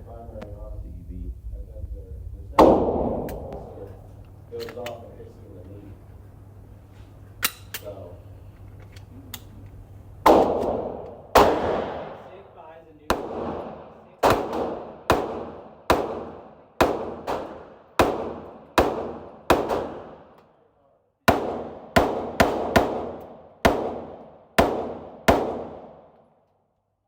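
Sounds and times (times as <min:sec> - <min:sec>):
pistol shots echoing: 0:02.6 - 0:03.9, 0:10.2 - 0:12.4, 0:13.1 - 0:20.4, 0:21.3 - 0:26.2.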